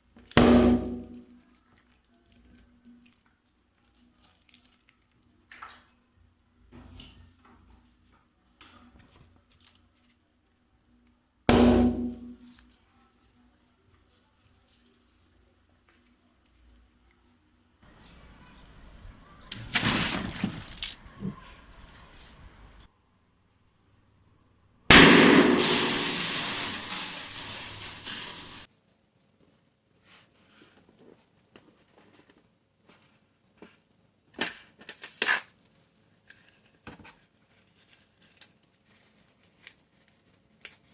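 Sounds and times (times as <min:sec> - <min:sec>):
faint handling sounds: 0:01.2 - 0:06.0, 0:06.6 - 0:11.2, 0:12.3 - 0:17.5, 0:28.7 - 0:40.9
balloon bursting: 0:19.5 - 0:21.4.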